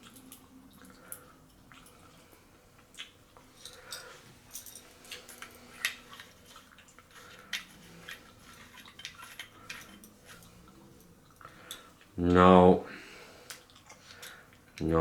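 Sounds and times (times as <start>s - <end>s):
small metal parts clinking: 3.6s - 6.4s.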